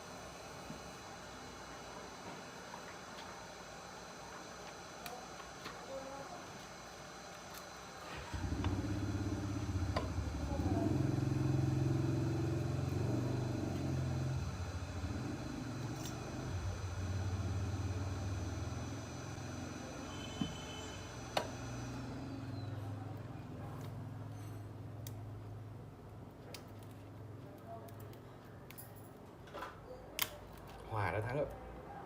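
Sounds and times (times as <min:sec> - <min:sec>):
engine starting and running: 0:08.0 - 0:23.0.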